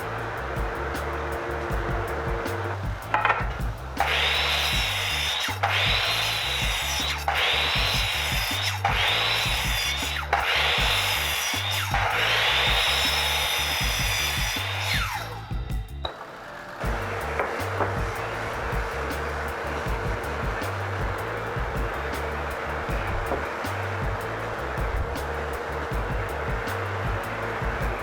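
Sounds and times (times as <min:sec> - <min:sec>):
hand saw cutting wood: 0:00.0 - 0:15.5, 0:16.8 - 0:28.0.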